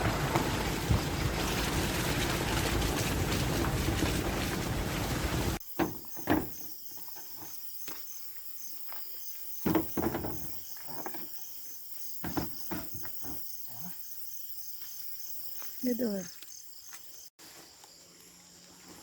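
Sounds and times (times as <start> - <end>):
insects chirping: 5.6 - 19.0.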